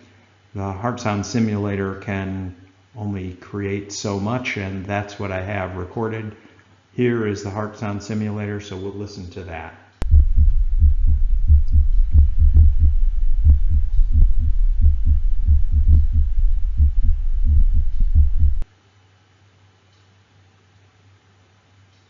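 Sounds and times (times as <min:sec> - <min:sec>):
heartbeat thuds: 0:10.0 - 0:18.6
low hum: 0:10.0 - 0:18.7.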